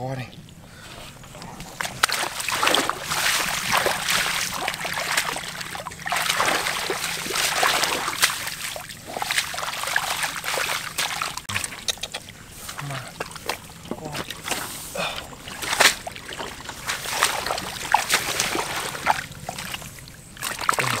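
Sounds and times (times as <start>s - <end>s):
shallow water splashing: 0.5s - 21.0s.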